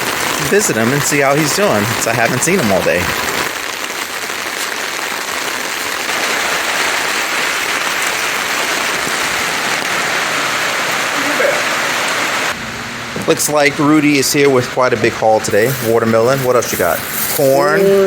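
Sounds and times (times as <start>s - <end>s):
heavy rain falling: 0.0s - 12.6s.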